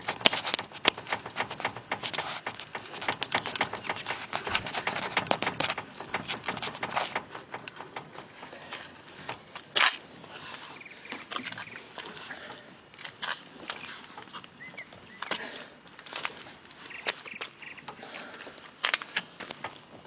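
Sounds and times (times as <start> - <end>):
loud thump: 0.0 - 9.6
steering rack knocking: 0.0 - 9.9.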